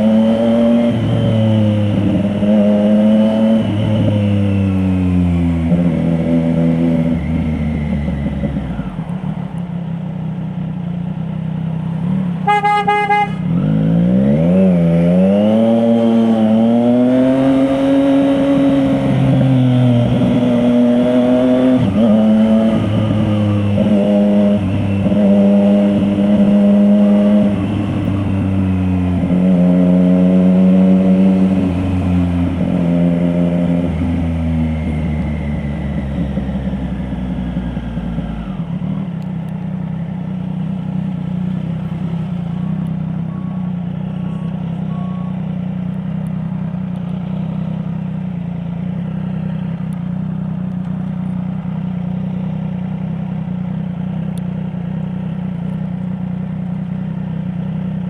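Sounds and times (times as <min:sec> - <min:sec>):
motorcycle engine accelerating: 0:00.0 - 0:58.0
horn honking: 0:12.4 - 0:13.7.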